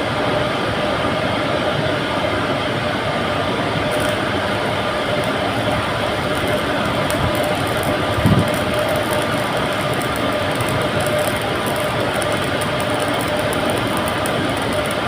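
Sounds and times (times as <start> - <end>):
welding arc crackling hiss: 3.9 - 15.0.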